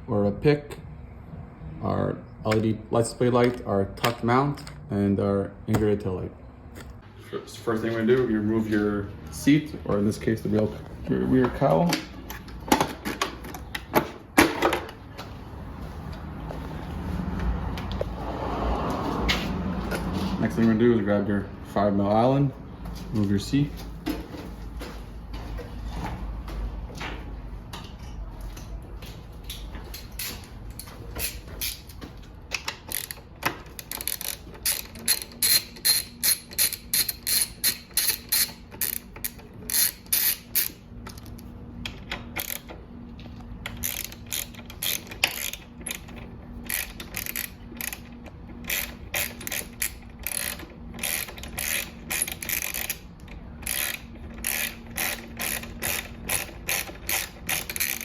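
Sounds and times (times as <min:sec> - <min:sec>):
ratchet wrench clicking: 0:32.5 - 0:41.4, 0:42.2 - 0:42.7, 0:43.7 - 0:58.0.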